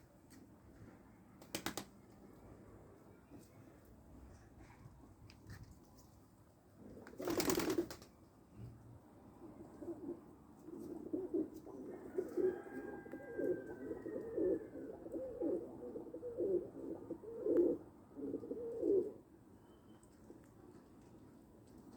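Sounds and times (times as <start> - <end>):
pigeons cooing: 9.5 - 19.2.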